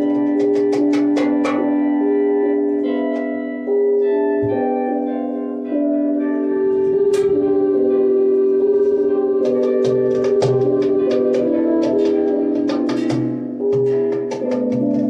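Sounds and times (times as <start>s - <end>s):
sustained melodic tones: 0.0s - 15.0s.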